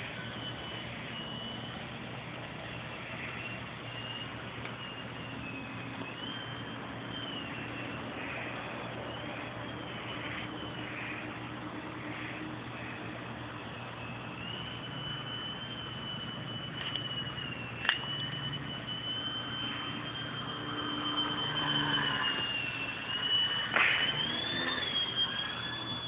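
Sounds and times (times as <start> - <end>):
model plane motor whining: 0.0 - 26.0
sharp click: 17.8 - 18.0.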